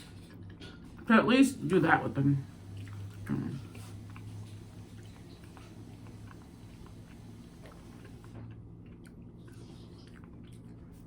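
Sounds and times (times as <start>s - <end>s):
steady low hum: 0.6s - 11.0s
chewing mouth clicks and smacks: 2.8s - 11.0s.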